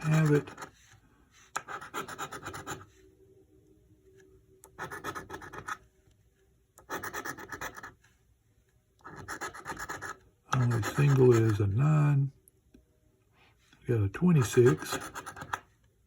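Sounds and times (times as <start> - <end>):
lottery ticket being scratched: 0.0 - 0.9, 1.5 - 2.9, 4.7 - 5.8, 6.8 - 8.0, 9.0 - 11.8, 14.3 - 15.7.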